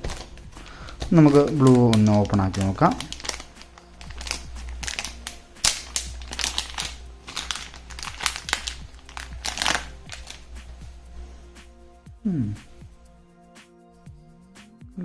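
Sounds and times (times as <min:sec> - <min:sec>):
plastic packaging crinkling: 0:00.0 - 0:10.7
faint background music: 0:00.0 - 0:15.0.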